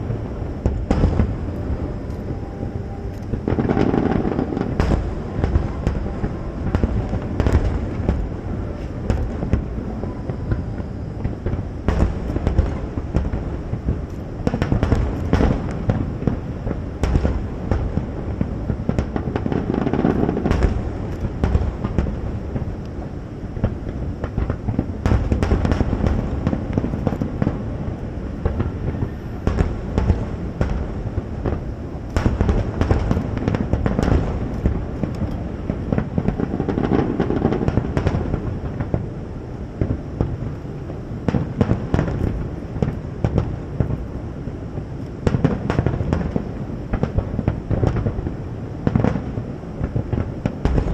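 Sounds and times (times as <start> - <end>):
low rumble: 0.0 - 19.4
fireworks bursting and crackling: 0.0 - 50.9.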